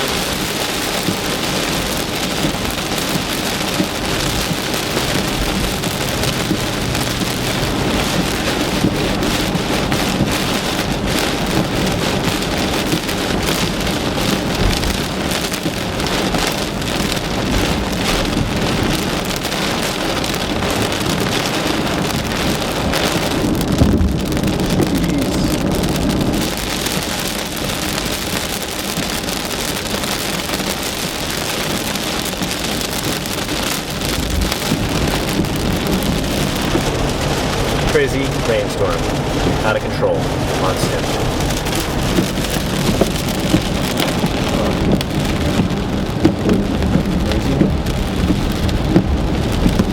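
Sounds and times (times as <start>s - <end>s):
heavy rain pelting a car: 0.0s - 49.9s
low rumble: 2.0s - 19.5s, 33.8s - 49.9s.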